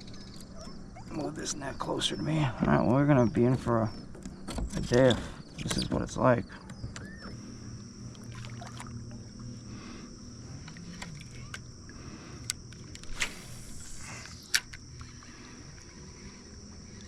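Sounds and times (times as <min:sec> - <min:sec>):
faint low hum: 0:00.0 - 0:17.0
high-pitched insect drone: 0:04.9 - 0:17.0.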